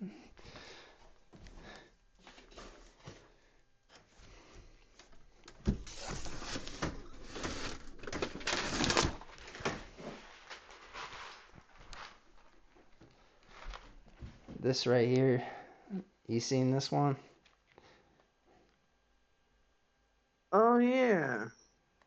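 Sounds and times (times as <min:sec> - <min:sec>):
light clicks and shuffles: 0:00.4 - 0:06.9, 0:09.3 - 0:15.4
rustling and scraping: 0:02.2 - 0:14.6.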